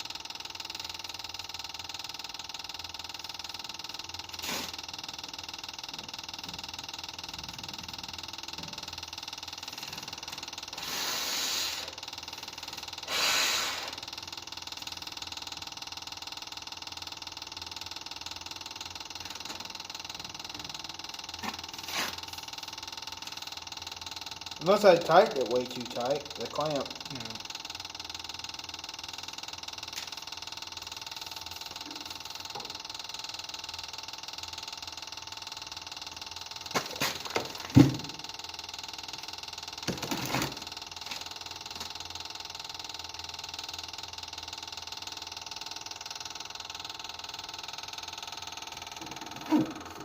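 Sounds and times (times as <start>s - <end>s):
electric fuel pump humming: 0.0s - 50.0s
short breathy hisses: 4.4s - 4.8s, 10.8s - 11.9s, 13.0s - 14.0s.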